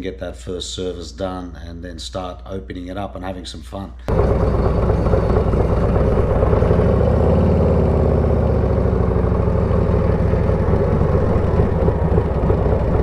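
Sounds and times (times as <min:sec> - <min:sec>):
motorcycle engine running: 0:04.1 - 0:13.0.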